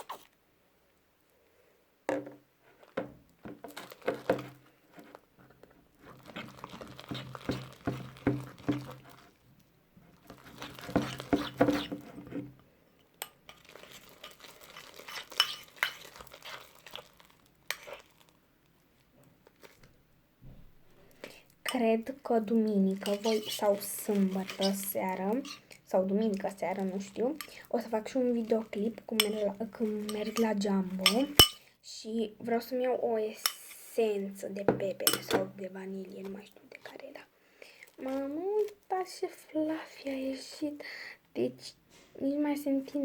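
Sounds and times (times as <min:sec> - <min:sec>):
utensil scraping bowl: 0:06.0 - 0:09.3, 0:10.1 - 0:12.6, 0:13.5 - 0:17.0, 0:17.7 - 0:18.0, 0:22.9 - 0:31.6, 0:34.7 - 0:35.5
slime squishing: 0:06.0 - 0:09.4, 0:10.1 - 0:12.2, 0:13.5 - 0:18.3, 0:19.2 - 0:19.9, 0:22.8 - 0:31.6.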